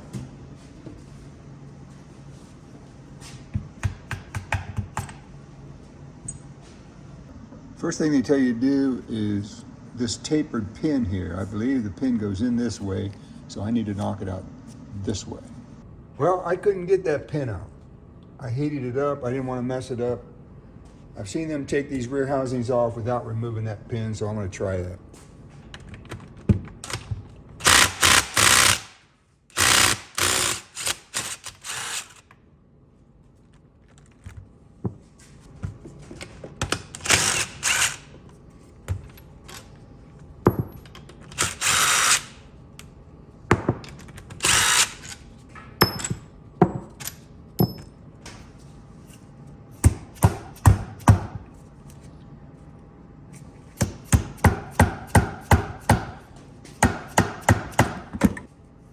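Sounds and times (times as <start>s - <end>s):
power tool spinning bolts: 27.6s - 32.2s, 36.9s - 38.1s, 41.3s - 42.4s, 44.3s - 45.2s
metal clinks and knocks: 45.8s - 48.0s.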